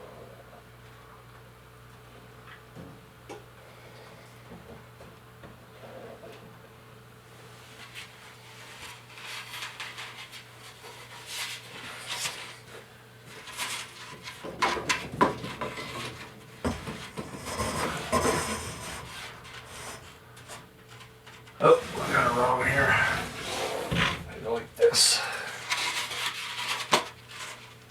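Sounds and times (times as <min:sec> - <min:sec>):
scraping and rubbing on wood: 0:07.8 - 0:27.9.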